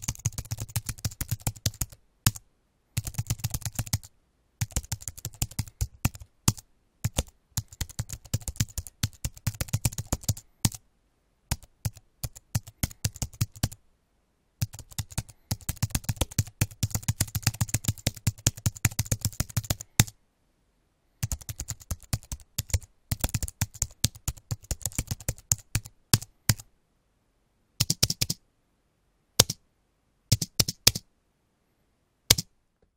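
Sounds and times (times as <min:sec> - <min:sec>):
computer keyboard typing: 0:00.0 - 0:02.4, 0:03.0 - 0:10.8, 0:11.5 - 0:13.8, 0:14.6 - 0:20.1, 0:21.2 - 0:26.7, 0:27.8 - 0:28.4, 0:29.4 - 0:29.6, 0:30.3 - 0:31.0.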